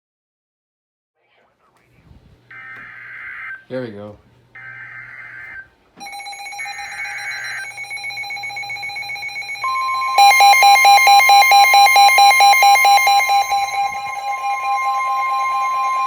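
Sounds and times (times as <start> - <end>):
rapid electronic beeping: 4.6 - 16.0
steady alert tone: 5.0 - 16.0.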